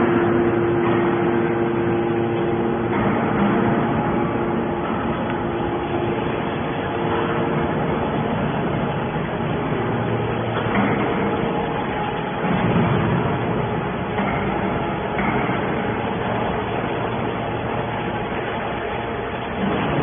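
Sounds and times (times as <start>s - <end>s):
scrap metal baler humming: 0.0s - 20.0s.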